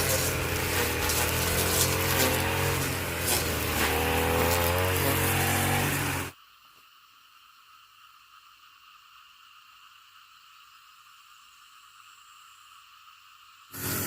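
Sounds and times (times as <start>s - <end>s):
motor engine running loudly: 0.0s - 6.3s, 13.8s - 14.0s.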